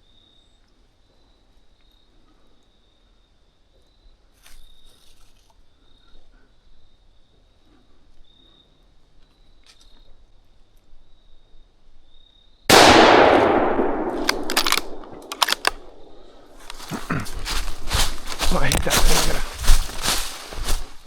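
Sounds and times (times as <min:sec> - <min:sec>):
crickets chirring: 0:00.0 - 0:21.0
sharp click: 0:12.7 - 0:16.9.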